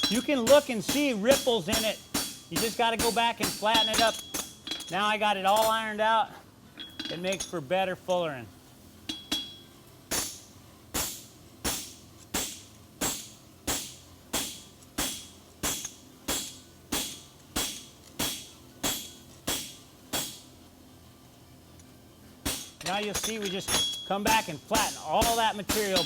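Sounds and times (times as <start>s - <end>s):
hammer striking shoe on anvil: 0.0s - 4.9s, 9.1s - 20.5s, 22.4s - 26.0s.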